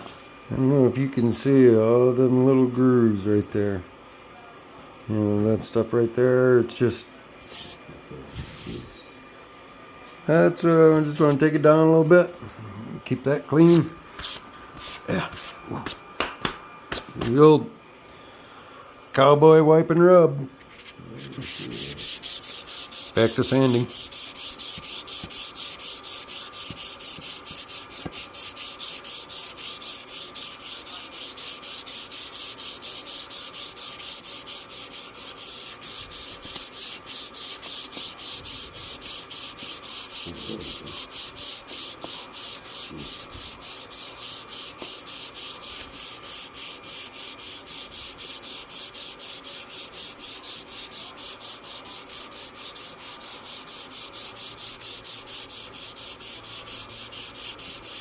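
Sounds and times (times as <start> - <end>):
sandpaper rubbing on wood: 20.8 - 58.0.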